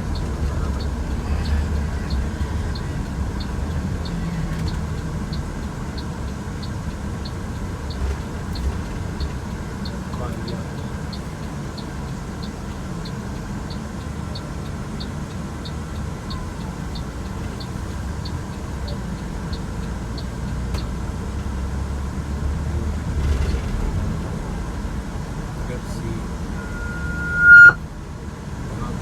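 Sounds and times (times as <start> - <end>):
light regular ticking: 0.0 - 23.2
engine and road rumble: 0.0 - 29.0.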